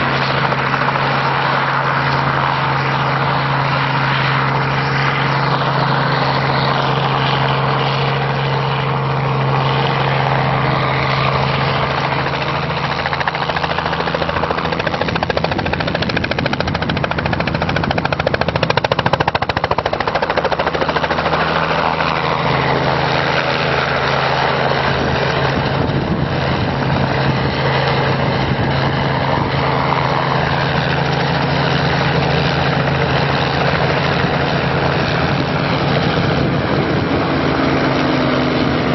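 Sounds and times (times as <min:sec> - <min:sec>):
helicopter rotor chopping: 0:00.0 - 0:38.9.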